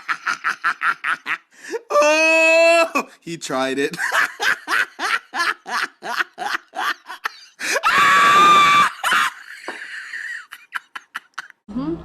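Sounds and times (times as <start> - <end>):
girls laughing: 4.0 - 11.6.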